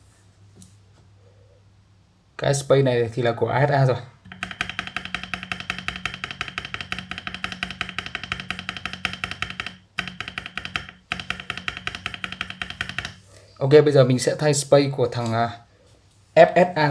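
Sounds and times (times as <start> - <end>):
keyboard spacebar clacking: 4.3 - 13.2.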